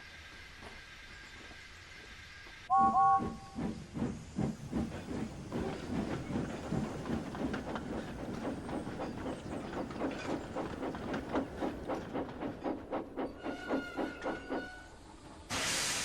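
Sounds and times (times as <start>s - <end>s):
steam whistle toots: 2.7s - 3.6s
steam locomotive chuffing: 2.7s - 16.0s
faint steam hiss: 14.9s - 16.0s.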